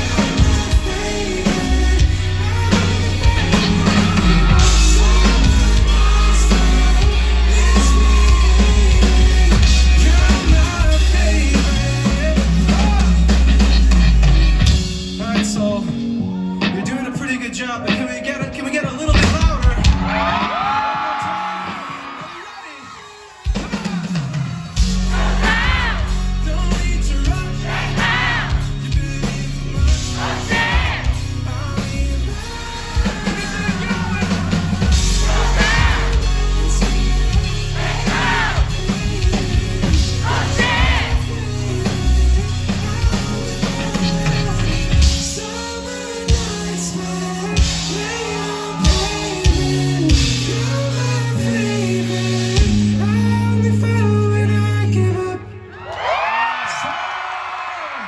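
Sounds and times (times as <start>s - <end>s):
person singing: 0.0s - 13.9s, 24.8s - 55.8s
heavy bass and kick drum: 0.0s - 15.2s, 24.8s - 45.3s
live rock band playing: 0.0s - 20.7s, 23.3s - 55.3s.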